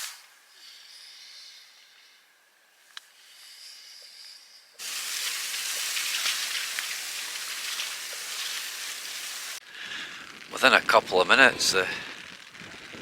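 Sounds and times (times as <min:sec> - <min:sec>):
faint hiss: 0:00.0 - 0:13.0
steady rain falling: 0:04.8 - 0:13.0.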